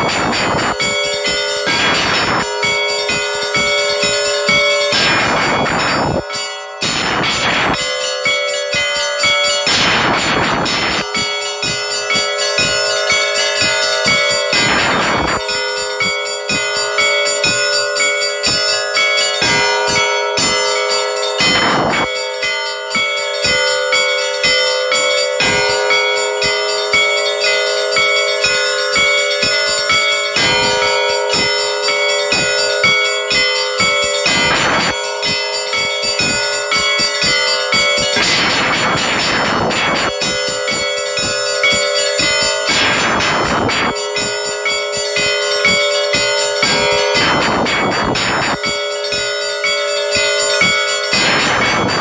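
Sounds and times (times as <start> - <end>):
heavy bell stroke: 0.0 - 52.0
small church bells pealing: 0.0 - 52.0.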